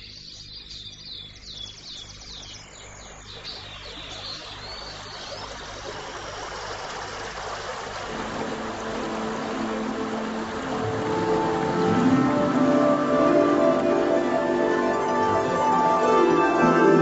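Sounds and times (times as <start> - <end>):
small birds chirping: 0.0 - 7.2
background music: 8.1 - 17.0
rushing noise: 8.1 - 17.0.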